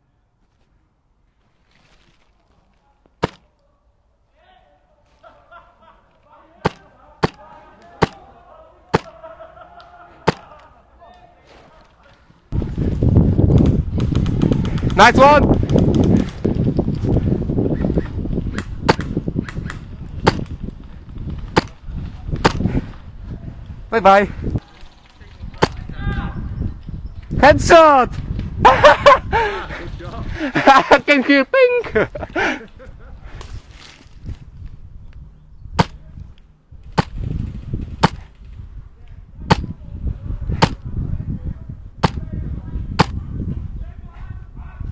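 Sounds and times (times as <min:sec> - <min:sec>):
airsoft rifle shots: 0:08.0 - 0:08.2.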